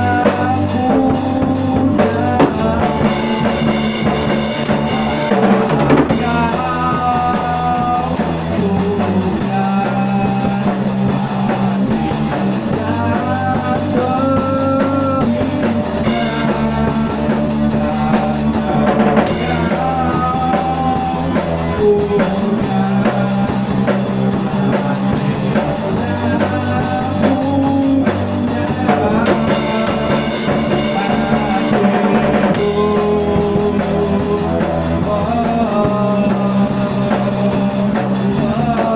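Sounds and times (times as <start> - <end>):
electric guitar bending notes: 0.0 - 8.9, 29.0 - 35.2
bass guitar: 0.0 - 38.9
drum kit steady beat: 0.0 - 38.9
rock band playing: 0.0 - 38.9.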